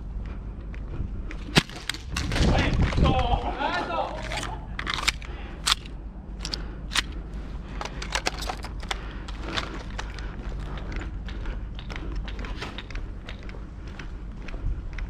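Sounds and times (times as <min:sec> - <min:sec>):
steady low rumble: 0:00.0 - 0:15.0
airsoft gun pops and clicks: 0:01.4 - 0:02.5, 0:04.2 - 0:07.2.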